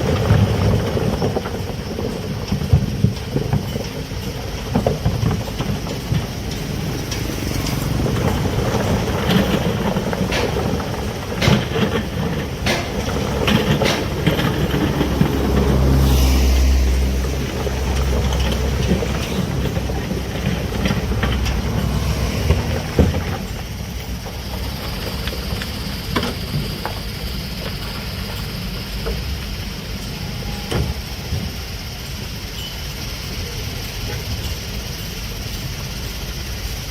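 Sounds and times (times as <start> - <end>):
sharp clanks and knocks: 0.0 - 16.2, 16.9 - 29.5
diesel engine low rumble: 0.0 - 36.9.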